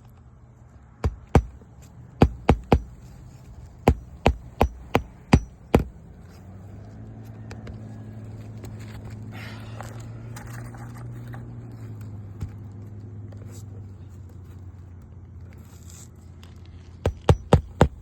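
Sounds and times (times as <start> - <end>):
hammer striking roofing nails: 1.0 - 1.6, 2.2 - 3.0, 3.9 - 5.9, 17.1 - 18.0
steady low hum: 1.0 - 1.6, 2.2 - 6.0.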